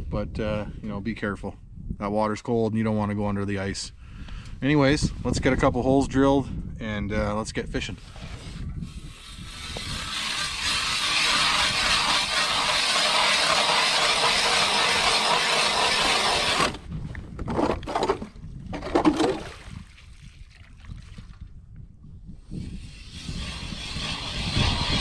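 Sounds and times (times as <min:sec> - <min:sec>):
knocks and scrapes: 0:08.0 - 0:19.5, 0:22.5 - 0:25.0
ice auger grinding through ice: 0:08.2 - 0:16.9, 0:22.7 - 0:25.0.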